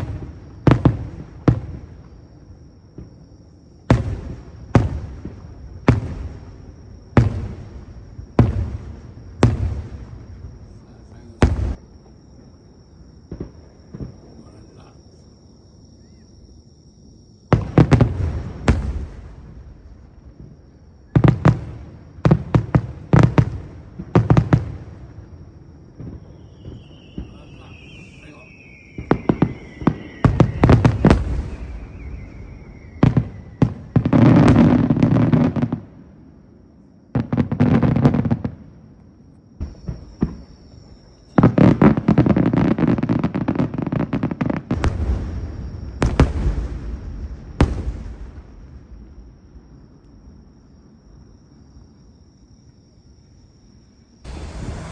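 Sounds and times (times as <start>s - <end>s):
crackling firework bursts: 0.0s - 11.8s, 17.5s - 36.1s, 39.6s - 49.4s, 54.2s - 54.9s
fireworks bangs: 0.0s - 15.3s, 17.3s - 36.2s, 37.1s - 38.7s, 39.6s - 49.8s, 54.2s - 54.9s
firework shells bursting: 25.9s - 34.7s, 54.3s - 54.9s
falling whistle: 26.1s - 34.1s, 54.2s - 54.9s.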